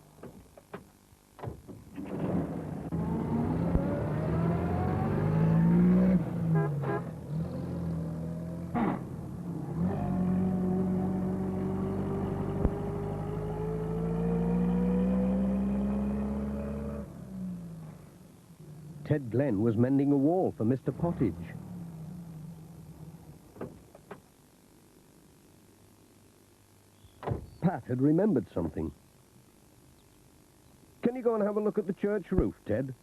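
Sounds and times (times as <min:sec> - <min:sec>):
vehicle engine accelerating: 0:02.2 - 0:19.2.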